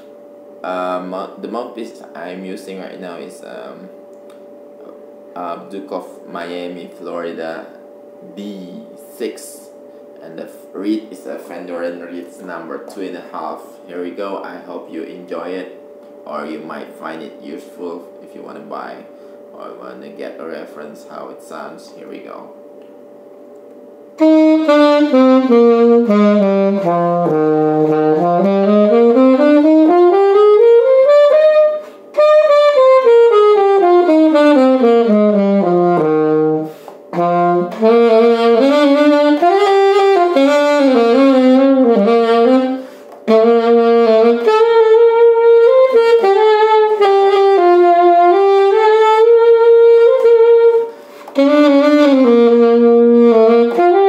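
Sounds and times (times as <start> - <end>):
alto saxophone playing: 24.2 - 54.0
player breathing: 42.8 - 43.2, 50.9 - 51.4.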